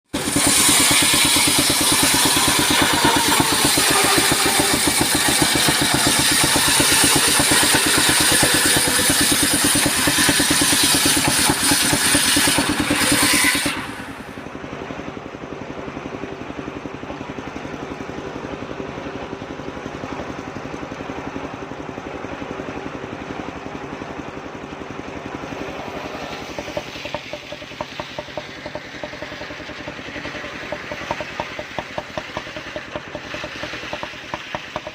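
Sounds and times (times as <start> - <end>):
sawmill engine running: 0.0 - 34.9
saw hiss: 0.1 - 14.4.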